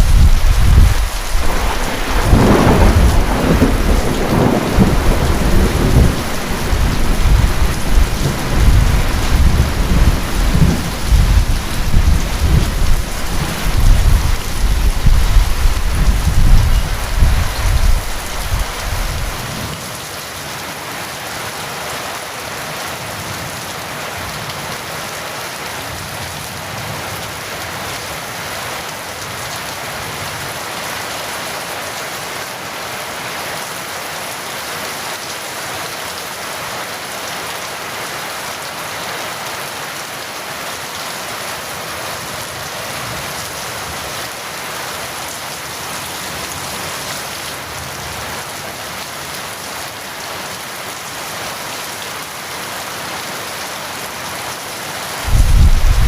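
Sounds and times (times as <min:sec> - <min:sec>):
rolling thunder rumble: 0:00.0 - 0:19.6, 0:55.3 - 0:56.0
heavy rain: 0:00.0 - 0:56.0.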